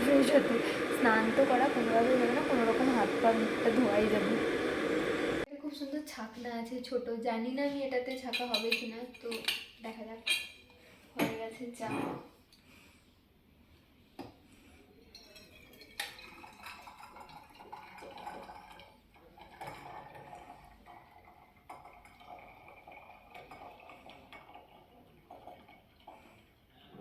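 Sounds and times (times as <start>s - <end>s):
metal strainer clinking on glass: 15.1s - 18.4s
tea pouring into glass: 15.2s - 26.7s.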